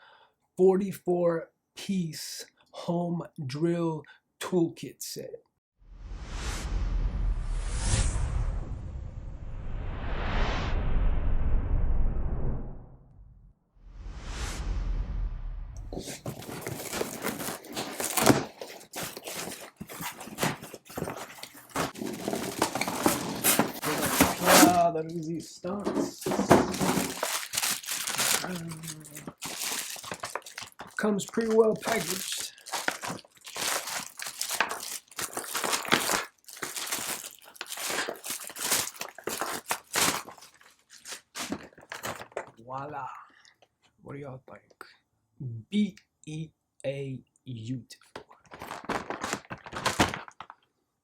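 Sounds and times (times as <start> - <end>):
whoosh sound effect: 13.9 - 15.8
plastic packaging rustling: 15.8 - 42.6, 48.2 - 50.7
cardboard box being handled: 15.9 - 24.8, 25.8 - 42.5.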